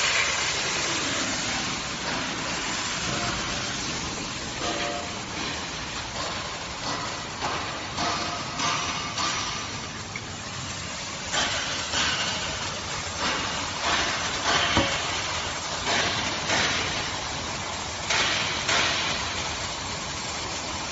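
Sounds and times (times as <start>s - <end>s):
plasma cutting torch hissing: 0.0s - 9.8s.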